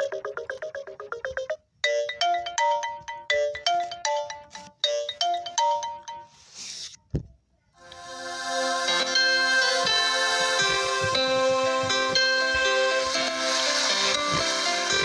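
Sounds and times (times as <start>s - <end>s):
fast chiming alarm notes: 0.0s - 4.3s
bell-like alarm melody: 0.0s - 6.4s, 8.6s - 13.0s.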